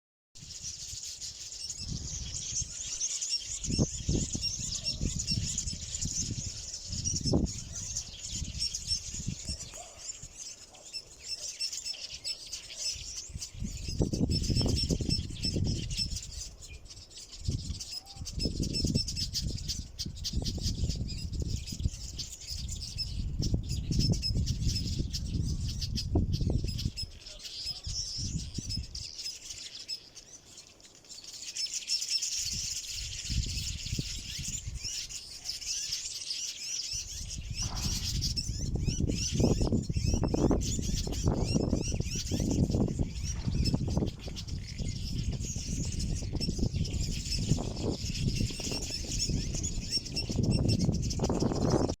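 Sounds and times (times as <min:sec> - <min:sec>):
weaver birds chattering: 0:00.4 - 0:52.0
low rumbling wind gusts: 0:37.1 - 0:52.0.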